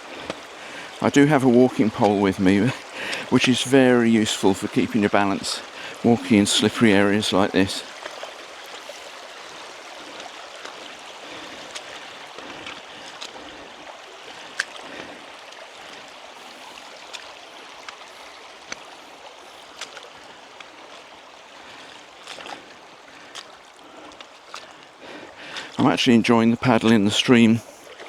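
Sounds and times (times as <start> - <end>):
river rushing over stones: 0.0 - 28.0
wading knocks and splashes: 0.0 - 28.0.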